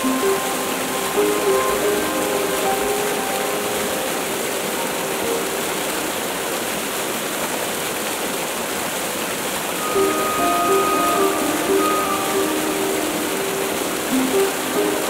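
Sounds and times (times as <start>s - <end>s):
waterfall roaring: 0.0s - 15.0s
faint background music: 9.8s - 15.0s.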